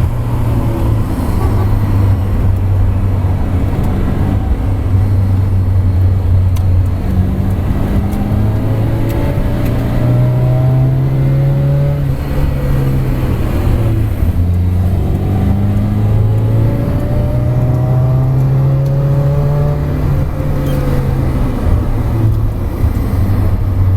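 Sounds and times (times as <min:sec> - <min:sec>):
car engine revving: 0:00.0 - 0:23.9.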